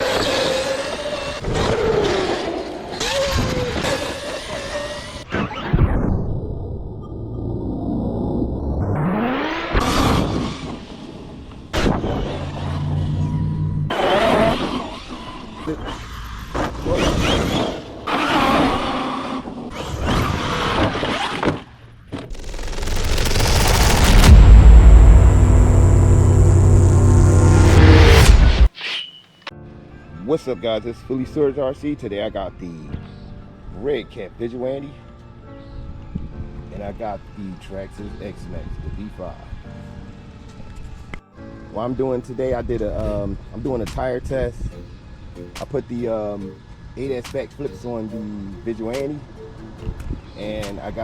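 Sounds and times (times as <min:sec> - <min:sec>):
electric rc trucks running: 0:00.0 - 0:05.3, 0:12.0 - 0:21.7
deep low hit: 0:22.3 - 0:28.7
electric motor whine: 0:22.3 - 0:28.7
rising noise: 0:22.3 - 0:29.5.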